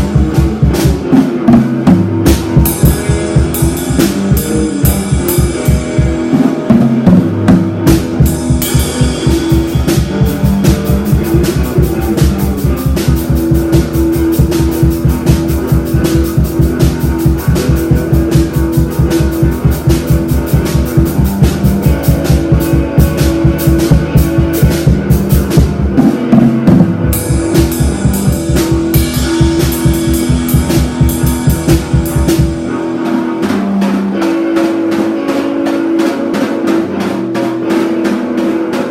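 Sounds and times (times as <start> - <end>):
fast rock drumming: 0.0 - 38.9
held guitar notes: 0.0 - 38.9.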